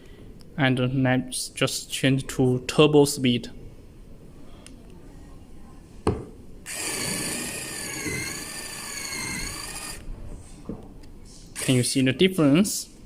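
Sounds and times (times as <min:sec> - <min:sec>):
drill click: 0:06.7 - 0:10.0, 0:11.6 - 0:12.0
electric drill whining into wood: 0:06.7 - 0:10.1, 0:11.6 - 0:12.0.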